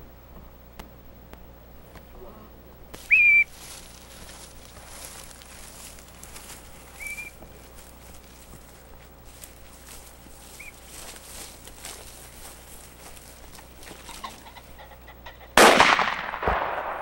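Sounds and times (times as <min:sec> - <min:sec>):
dog whistle blasts: 0:03.1 - 0:03.5.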